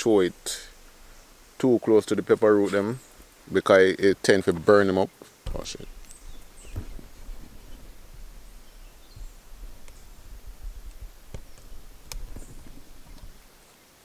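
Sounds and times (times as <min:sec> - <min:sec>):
low outdoor rumble: 0:00.0 - 0:04.0, 0:05.5 - 0:13.6
sharp clicks and knocks: 0:05.4 - 0:13.6.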